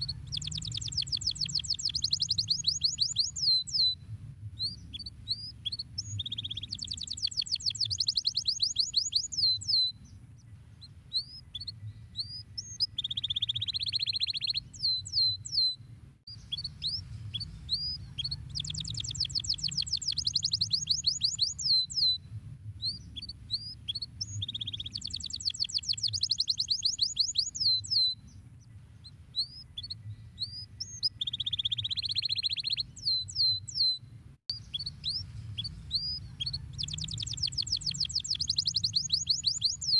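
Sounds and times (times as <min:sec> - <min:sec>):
canary singing: 0:00.0 - 0:04.0, 0:04.6 - 0:22.2, 0:22.8 - 0:39.9
steady low hum: 0:03.3 - 0:06.6, 0:15.8 - 0:19.6, 0:34.0 - 0:37.9.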